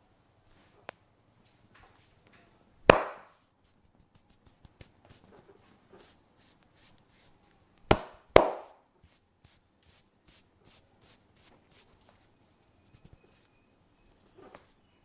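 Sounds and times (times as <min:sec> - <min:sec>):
sharp smacks on skin: 0:02.9 - 0:03.3
hands rubbing over skin: 0:03.6 - 0:07.4, 0:09.0 - 0:13.5.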